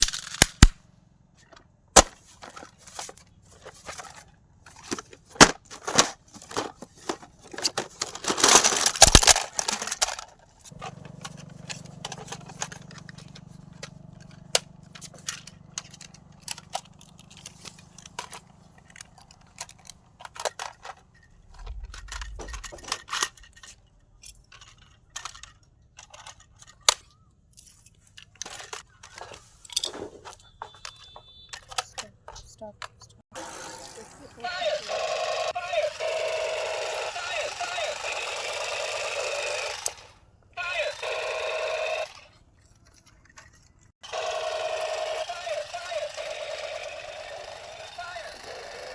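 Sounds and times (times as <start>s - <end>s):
toy machine gun firing: 0.0s - 0.8s, 2.0s - 23.8s, 33.4s - 42.4s, 44.0s - 48.9s
steady low hum: 20.9s - 25.1s.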